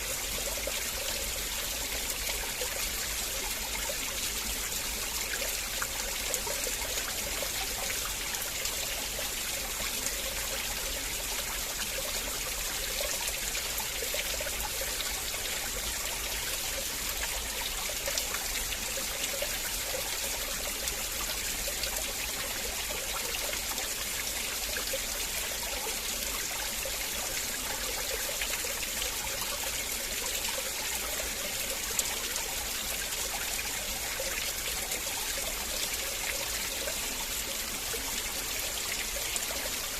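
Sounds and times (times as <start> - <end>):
river water flowing over stones: 0.0 - 39.9.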